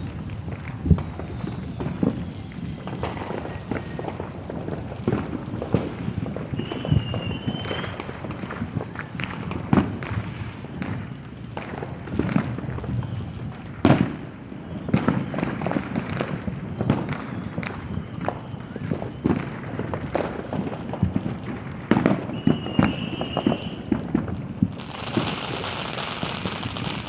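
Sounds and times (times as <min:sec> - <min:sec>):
thin firework whistle: 0:00.0 - 0:11.4, 0:12.2 - 0:21.2, 0:21.8 - 0:27.0
fireworks bangs and pops: 0:00.0 - 0:27.0.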